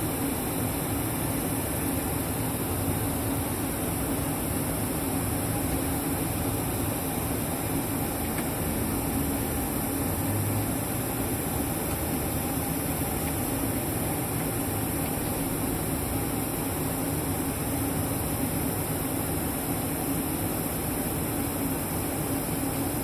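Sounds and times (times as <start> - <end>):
bus diesel engine running: 8.6 - 13.0.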